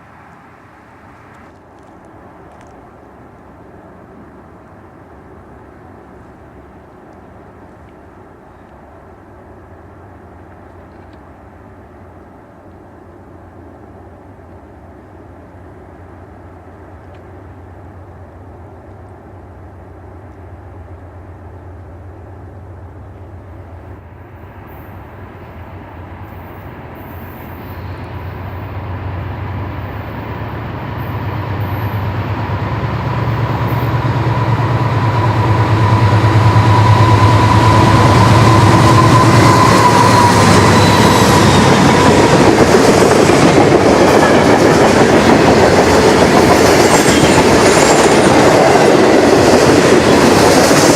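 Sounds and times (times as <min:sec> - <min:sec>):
locomotive engine drone: 0:00.0 - 0:50.9
train wheels rumbling and clacking: 0:22.7 - 0:50.9.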